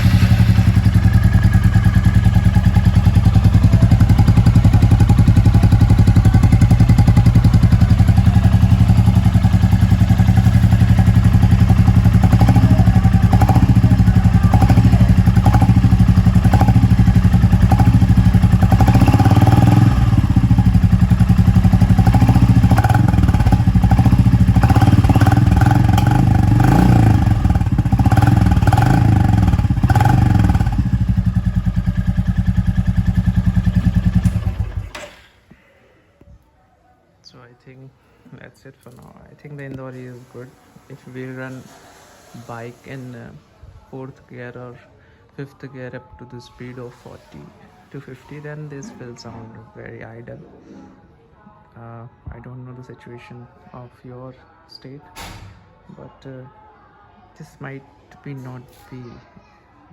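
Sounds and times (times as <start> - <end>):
motorcycle engine idling: 0.0 - 35.0.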